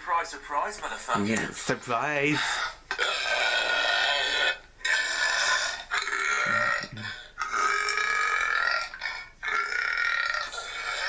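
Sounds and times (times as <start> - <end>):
man burping: 2.4 - 11.0.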